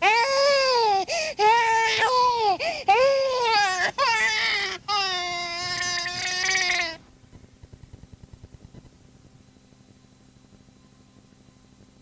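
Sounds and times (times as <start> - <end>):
infant crying: 0.0 - 7.0.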